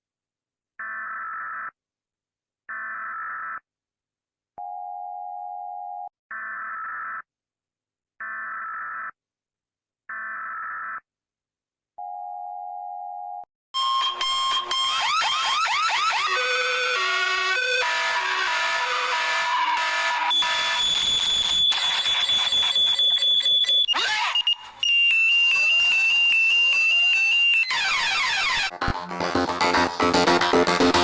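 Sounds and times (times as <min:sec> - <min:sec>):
low steady electronic tone: 0:13.8 - 0:23.7
buzzy electronic alert beeps: 0:13.8 - 0:28.7
siren-like alarm sweeping tones: 0:13.8 - 0:28.7.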